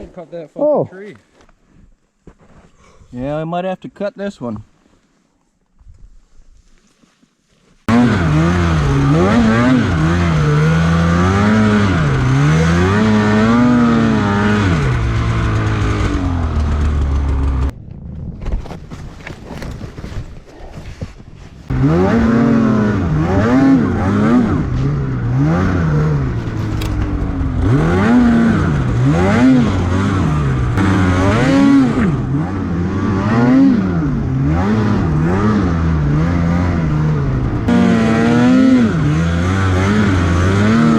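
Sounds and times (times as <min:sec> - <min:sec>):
snowmobile engine revving: 0:07.9 - 0:17.7, 0:21.7 - 0:40.9.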